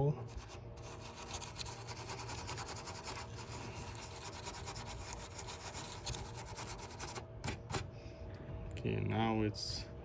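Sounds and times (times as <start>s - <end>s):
scrubbing a wire joint: 0.2s - 7.2s.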